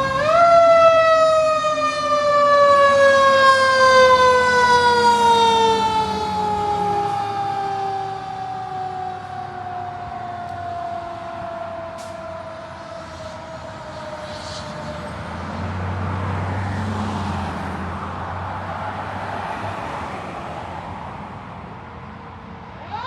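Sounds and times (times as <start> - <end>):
fire truck siren winding down: 0.0 - 20.0, 22.8 - 23.0
heavy truck engine: 0.0 - 22.7
road noise hiss: 9.2 - 22.8.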